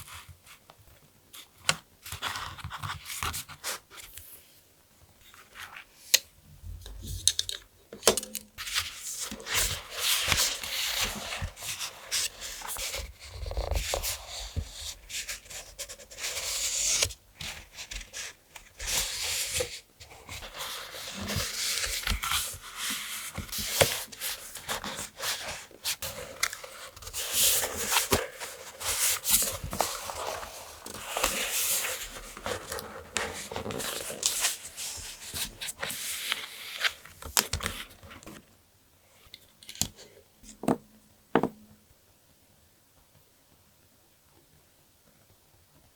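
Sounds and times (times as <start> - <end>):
paper rustling: 20.3 - 38.4.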